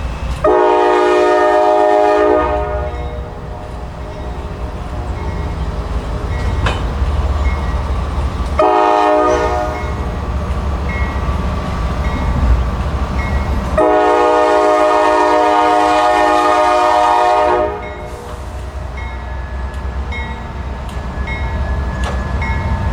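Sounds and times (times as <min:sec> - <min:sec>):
locomotive horn blasts: 0:00.4 - 0:03.9, 0:08.6 - 0:10.1, 0:13.8 - 0:18.4.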